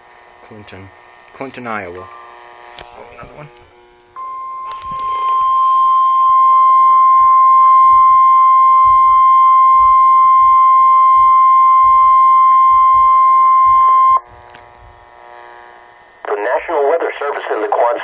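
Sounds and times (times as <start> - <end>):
weather radio alarm tone: 4.2 - 14.2.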